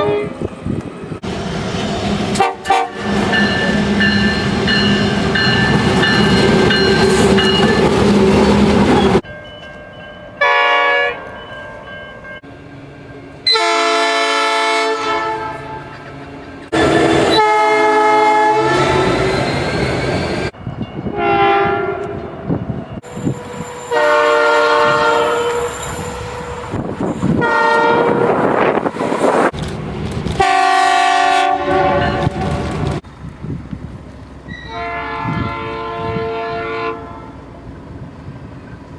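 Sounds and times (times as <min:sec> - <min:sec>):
train horn blasts: 0:00.0 - 0:00.4, 0:02.3 - 0:04.5, 0:10.4 - 0:11.4, 0:13.4 - 0:16.1, 0:16.7 - 0:19.4, 0:21.0 - 0:22.3, 0:23.1 - 0:29.4, 0:30.4 - 0:32.8, 0:34.6 - 0:37.4
passing train rumble: 0:00.0 - 0:38.9.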